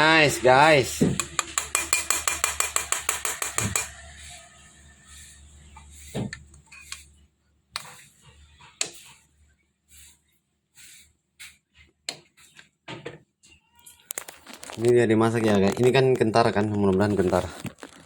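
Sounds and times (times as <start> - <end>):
utensil clicking against pan: 1.2 - 4.0.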